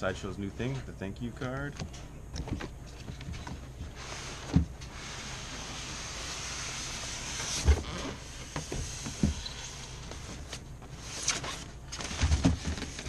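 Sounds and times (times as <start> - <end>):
packing scraping against cardboard: 3.0 - 13.0.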